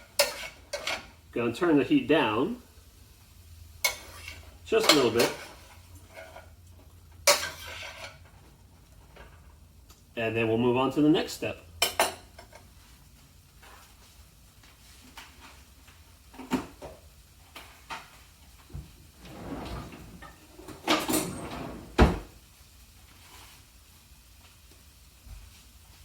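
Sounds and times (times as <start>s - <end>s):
rustling clatter: 18.8s - 22.4s.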